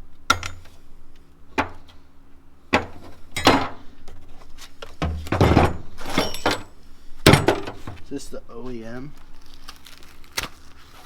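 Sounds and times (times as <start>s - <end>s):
metal parts clinking in a box: 5.4s - 7.8s.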